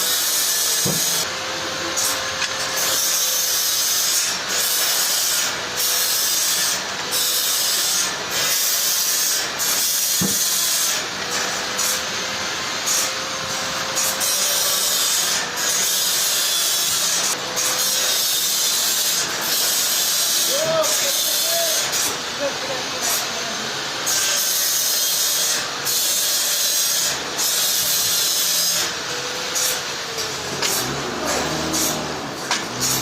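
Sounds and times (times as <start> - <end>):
saw cutting through log: 0.0 - 33.0.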